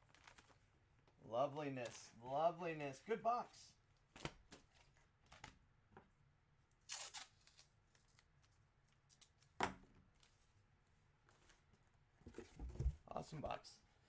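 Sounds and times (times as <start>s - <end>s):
plastic packaging rustling: 0.0s - 0.7s.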